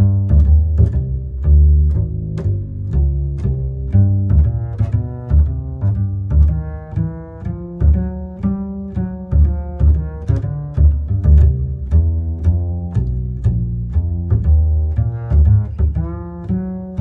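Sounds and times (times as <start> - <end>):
plucked and bowed strings: 0.0 - 17.0.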